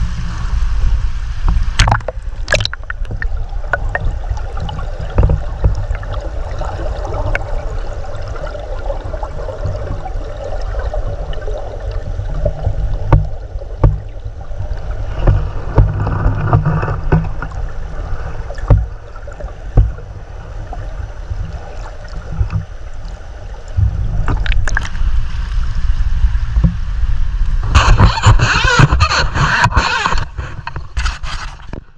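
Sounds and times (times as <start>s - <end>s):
bright water rushing: 0.0s - 31.9s
underwater river rumble: 0.0s - 31.9s
sharp underwater clicks: 1.7s - 6.0s, 24.3s - 25.0s.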